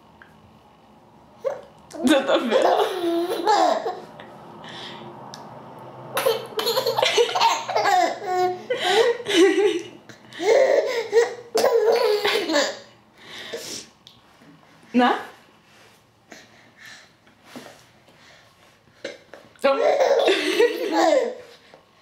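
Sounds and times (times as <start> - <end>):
baby laughing: 2.5 - 4.1, 6.1 - 12.9, 19.8 - 21.4.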